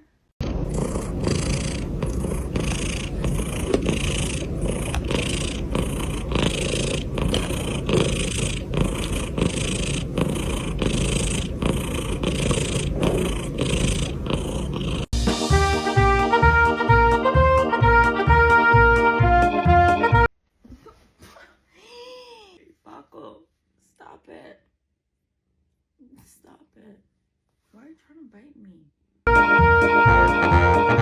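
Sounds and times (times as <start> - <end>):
cat purring: 0.4 - 15.2.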